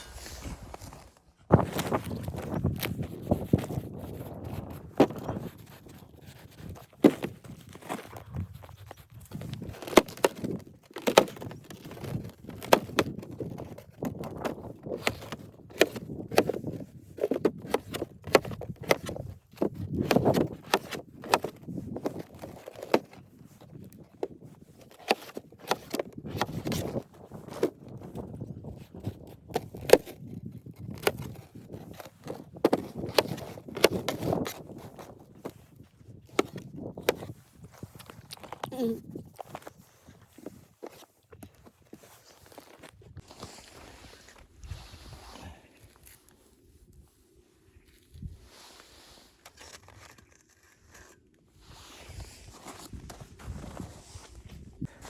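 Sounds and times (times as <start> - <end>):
soft crunching: 0.0 - 55.0.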